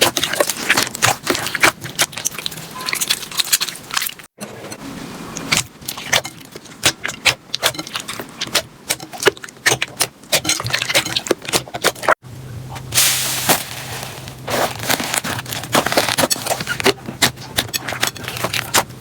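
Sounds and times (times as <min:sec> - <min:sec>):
slime crackling: 0:12.9 - 0:19.0.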